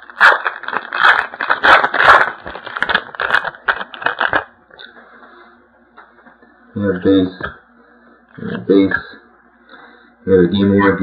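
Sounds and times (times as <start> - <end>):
card pack wrapper tearing: 0.0 - 4.5.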